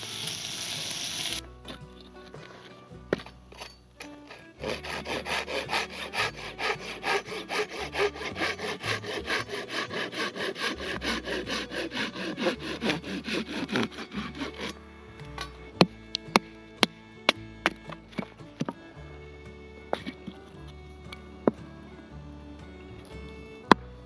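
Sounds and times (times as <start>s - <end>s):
hand saw cutting wood: 2.4s - 18.8s.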